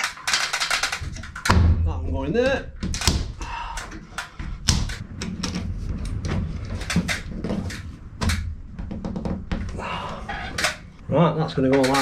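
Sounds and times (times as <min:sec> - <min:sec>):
plastic pipe knocking and clicking: 0:06.3 - 0:09.8.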